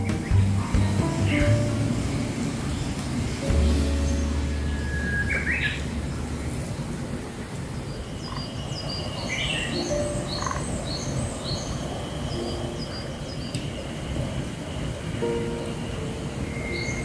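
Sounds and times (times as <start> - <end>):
wild birds chirping: 0.0 - 17.0
low hum: 3.4 - 7.4.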